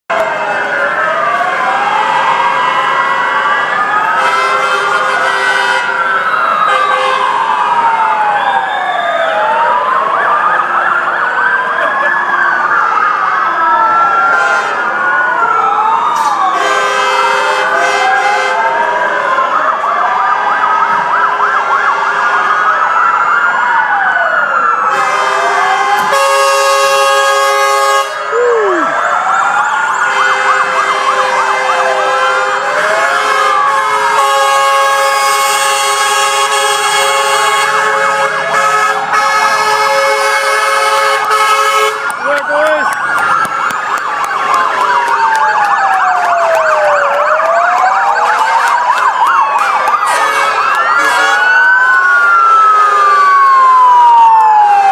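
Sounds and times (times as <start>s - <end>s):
fire truck sirens wailing: 0.1s - 54.9s
horn blasts: 4.2s - 6.0s, 16.6s - 18.6s, 24.9s - 25.5s, 26.1s - 28.3s, 30.1s - 43.0s, 49.6s - 51.6s.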